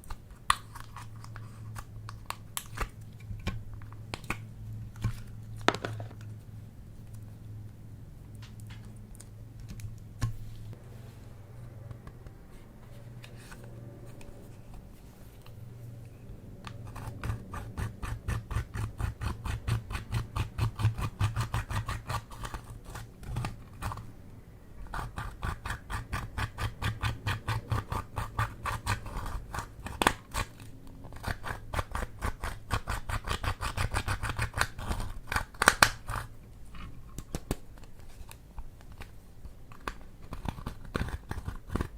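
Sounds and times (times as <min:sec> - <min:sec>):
steady low hum: 0:00.0 - 0:32.2.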